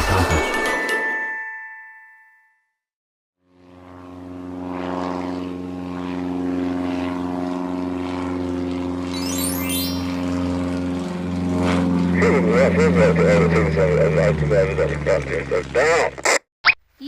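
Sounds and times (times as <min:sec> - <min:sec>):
engine drone: 0:03.4 - 0:16.4
chime tones: 0:09.1 - 0:10.4
high rising whistle: 0:09.1 - 0:10.5.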